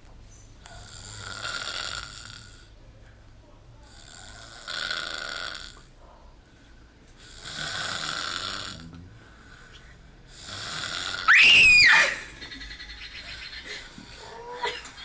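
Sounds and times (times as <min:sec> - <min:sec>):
person snoring: 0:07.3 - 0:09.6.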